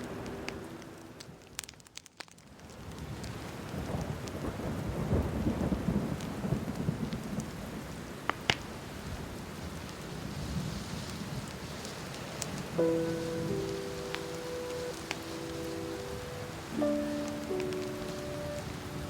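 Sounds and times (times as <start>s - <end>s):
steady rain: 0.0s - 19.0s
sharp thunder crackles: 3.7s - 7.5s
rolling thunder: 3.8s - 7.5s.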